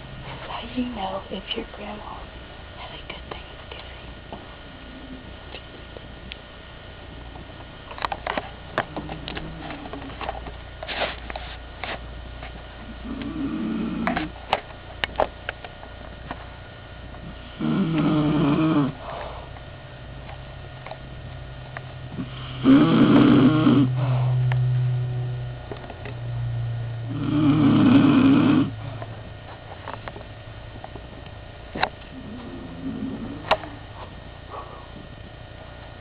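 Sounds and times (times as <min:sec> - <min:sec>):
steady low hum: 0:00.0 - 0:36.0
woman snoring: 0:13.0 - 0:14.2, 0:17.6 - 0:19.0, 0:22.2 - 0:24.4, 0:27.1 - 0:28.9, 0:32.1 - 0:33.8.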